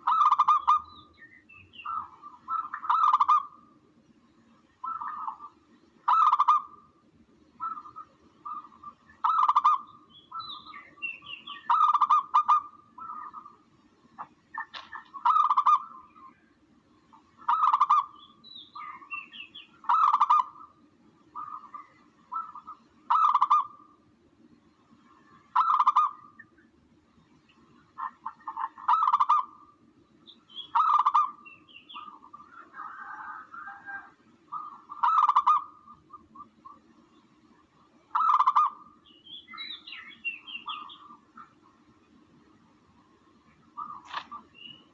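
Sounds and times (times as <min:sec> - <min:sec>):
recorded dove calls: 0:00.0 - 0:03.8, 0:04.8 - 0:24.0, 0:25.4 - 0:26.7, 0:27.6 - 0:37.0, 0:37.8 - 0:41.9, 0:43.5 - 0:44.9
higher bird chirps: 0:07.6 - 0:13.6, 0:17.1 - 0:20.8, 0:27.5 - 0:37.4, 0:38.1 - 0:41.7, 0:43.5 - 0:44.9.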